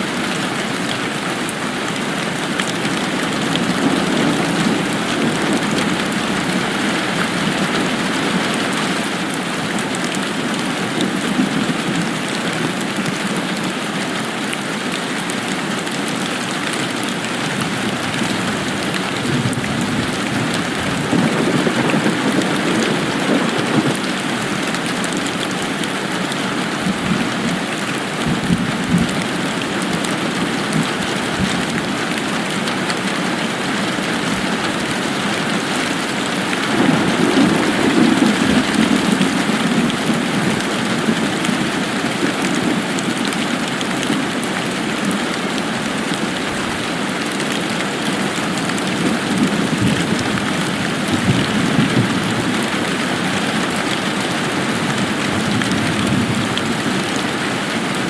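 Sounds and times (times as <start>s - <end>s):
heavy rain pattering: 0.0s - 58.0s.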